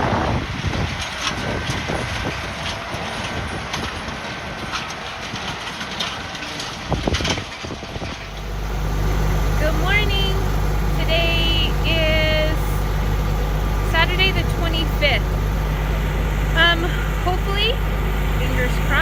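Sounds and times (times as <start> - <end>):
vehicle engine running: 7.8 - 19.0.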